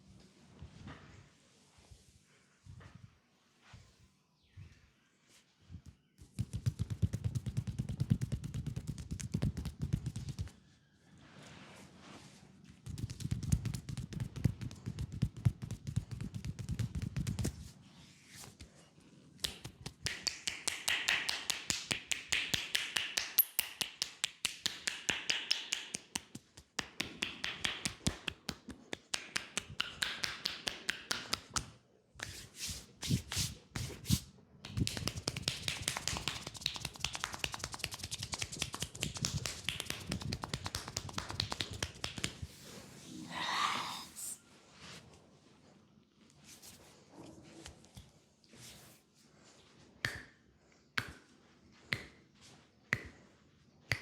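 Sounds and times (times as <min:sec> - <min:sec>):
hands tapping on a leg: 0:06.2 - 0:10.5, 0:12.8 - 0:17.6, 0:19.4 - 0:32.4, 0:34.6 - 0:42.5, 0:50.0 - 0:50.4, 0:51.0 - 0:51.3, 0:51.9 - 0:52.2, 0:52.9 - 0:53.2.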